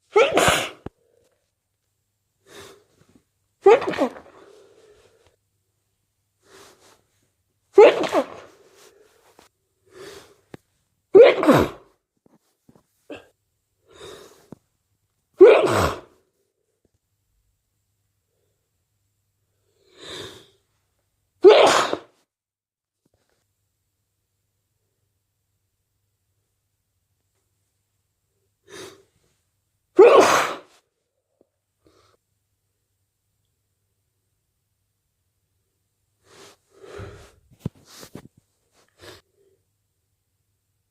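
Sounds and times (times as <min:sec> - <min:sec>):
person sneezing: 0:00.0 - 0:01.2, 0:03.6 - 0:05.0, 0:07.7 - 0:10.4, 0:11.1 - 0:12.0, 0:13.0 - 0:13.4, 0:15.4 - 0:16.2, 0:21.4 - 0:22.2, 0:30.0 - 0:30.8
quiet breaths: 0:00.8 - 0:01.6, 0:04.3 - 0:05.5, 0:06.3 - 0:07.4, 0:08.5 - 0:10.9, 0:12.3 - 0:14.8, 0:36.1 - 0:39.8
person breathing in: 0:36.2 - 0:37.5.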